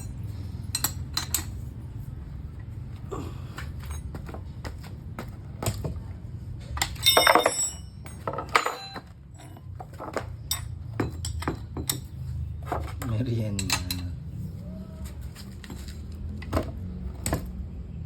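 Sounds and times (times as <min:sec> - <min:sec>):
light metallic clinks: 0:00.0 - 0:01.6, 0:06.8 - 0:09.8, 0:10.4 - 0:12.2
ringing metal clanks: 0:00.0 - 0:01.7, 0:03.7 - 0:04.7, 0:05.6 - 0:12.3, 0:13.2 - 0:14.2.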